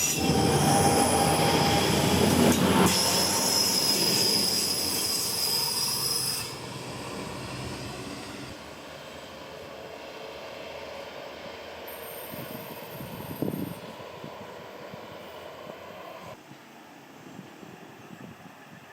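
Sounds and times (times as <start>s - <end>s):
high wheel squeal: 0.0s - 8.5s, 11.9s - 13.8s
train rolling on rails: 0.0s - 16.4s.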